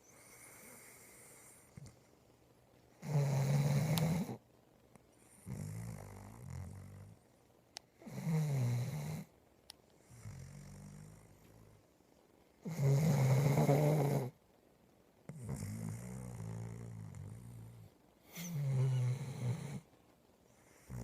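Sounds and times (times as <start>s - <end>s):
soft low snoring breaths: 0.0s - 2.2s, 3.0s - 4.4s, 5.2s - 7.3s, 8.0s - 9.4s, 10.0s - 11.9s, 12.6s - 14.4s, 15.3s - 19.9s, 20.5s - 21.0s
loud snores: 3.0s - 4.4s, 5.4s - 7.2s, 8.0s - 9.3s, 12.6s - 14.4s, 15.3s - 19.9s, 20.7s - 21.0s.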